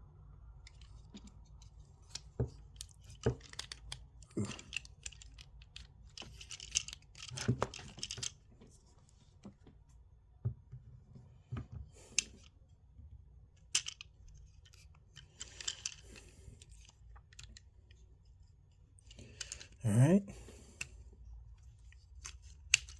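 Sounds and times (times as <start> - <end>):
plastic joints clicking: 0.7 - 8.4, 13.6 - 17.7, 21.9 - 22.9
plastic parts scraping: 0.7 - 8.7, 13.7 - 18.0, 19.0 - 19.8.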